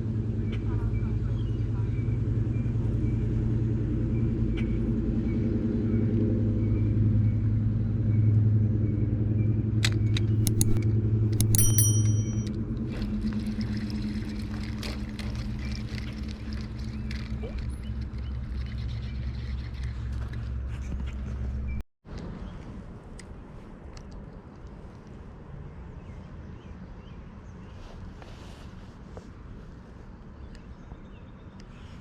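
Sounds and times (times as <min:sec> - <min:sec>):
sharp clicks: 0:10.4 - 0:10.8, 0:11.4 - 0:12.5.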